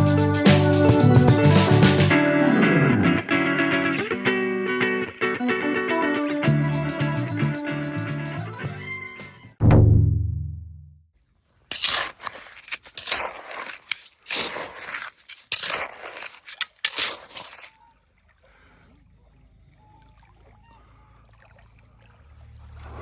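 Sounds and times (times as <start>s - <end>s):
wet sand scraping and splashing: 11.6s - 17.8s, 22.6s - 23.0s.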